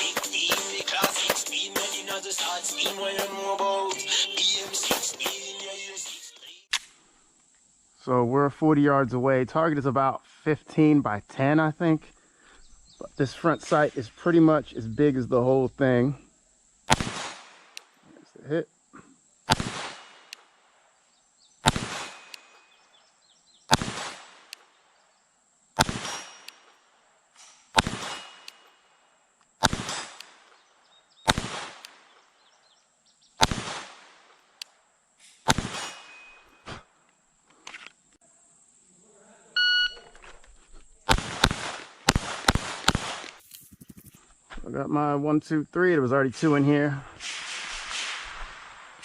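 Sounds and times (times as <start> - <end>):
pistol shots: 16.9 - 17.8, 19.5 - 20.4, 21.6 - 22.6, 23.7 - 24.6, 25.8 - 26.7, 27.7 - 28.6, 29.6 - 30.5, 31.2 - 32.2, 33.4 - 34.3, 35.4 - 36.3, 41.1 - 43.4
shot timer beep: 39.6 - 40.0.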